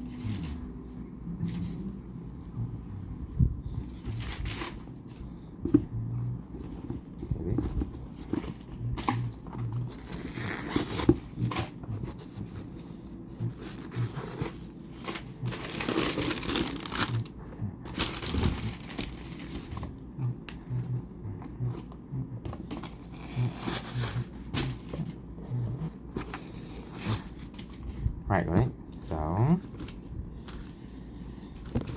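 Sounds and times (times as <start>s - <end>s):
packaging crinkling: 14.5s - 17.3s, 17.9s - 19.9s
packaging tearing: 15.1s - 17.3s, 17.9s - 19.7s.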